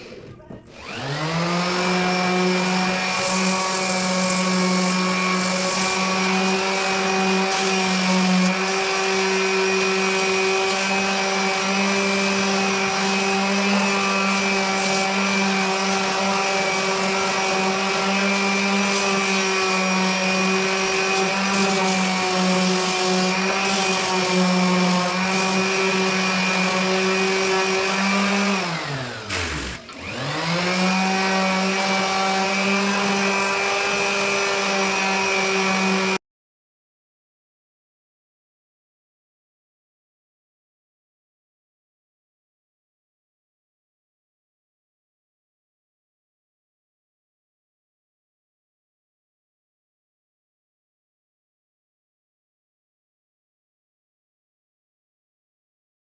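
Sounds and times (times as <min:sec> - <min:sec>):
electric power sander running: 0:00.7 - 0:36.2.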